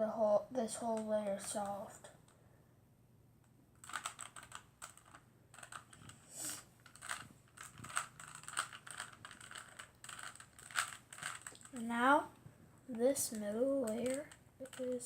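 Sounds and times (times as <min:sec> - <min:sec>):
puzzle cube clicking and rattling: 0:03.8 - 0:12.2, 0:12.9 - 0:15.0.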